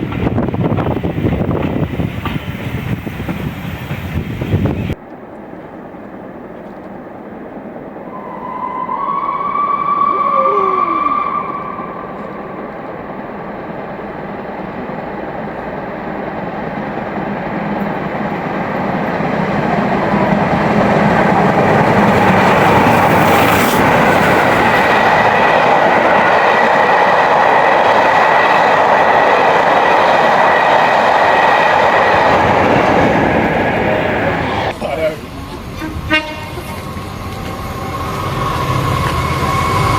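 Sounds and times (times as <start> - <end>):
train wheels rumbling on rails: 0.0 - 39.9
faint high tone: 8.1 - 12.5
short pitched tone: 8.1 - 12.5.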